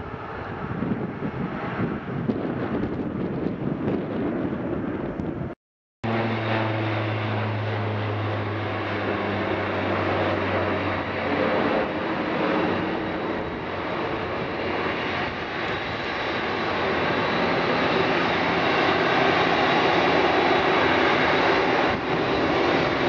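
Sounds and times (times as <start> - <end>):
jet engine rush: 0.0 - 23.0
low hum: 6.0 - 13.3.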